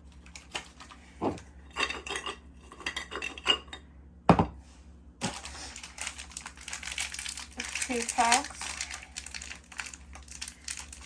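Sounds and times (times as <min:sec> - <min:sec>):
cookies clattering into a jar: 0:05.2 - 0:11.0
plastic wrapper crinkling: 0:05.2 - 0:11.0.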